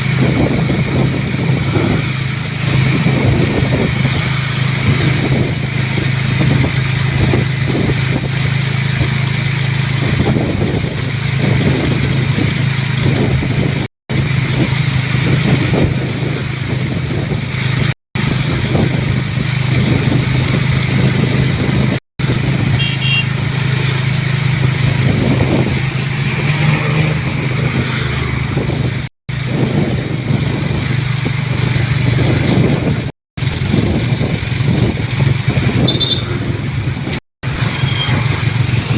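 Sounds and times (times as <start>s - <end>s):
road and wind noise: 0.0s - 38.9s
vehicle engine hum: 0.0s - 38.9s.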